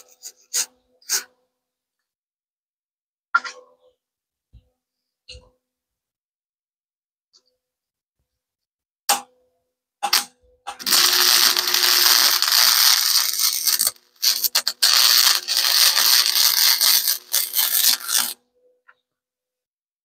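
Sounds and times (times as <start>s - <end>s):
electric power tool running: 10.8s - 18.4s.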